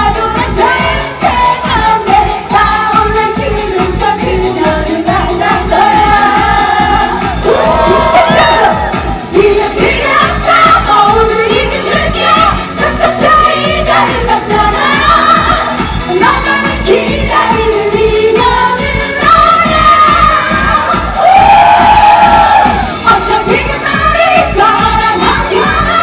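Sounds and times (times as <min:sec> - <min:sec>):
live band with driving beat: 0:00.0 - 0:26.0
woman singing pop song: 0:00.0 - 0:26.0.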